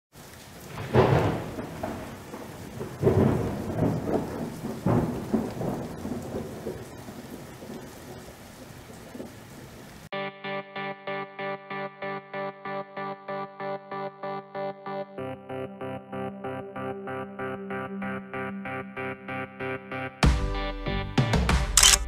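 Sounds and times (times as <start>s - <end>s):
rain falling: 0.1s - 10.1s
thunder rolling: 0.6s - 9.7s.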